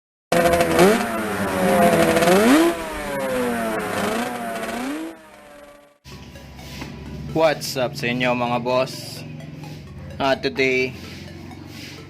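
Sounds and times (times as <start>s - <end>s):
scooter engine revving: 0.3s - 6.2s, 6.9s - 12.0s.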